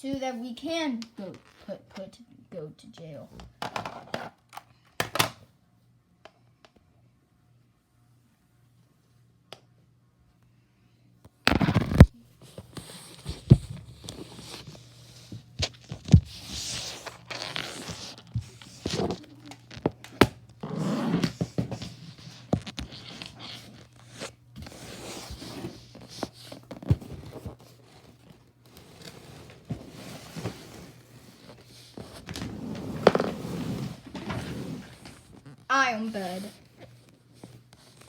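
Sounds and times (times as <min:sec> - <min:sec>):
rustling and scraping: 0:11.5 - 0:38.0.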